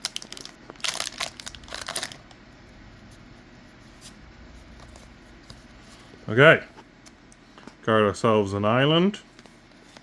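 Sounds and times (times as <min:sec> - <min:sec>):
wrapper tearing and crinkling: 0:00.0 - 0:02.4.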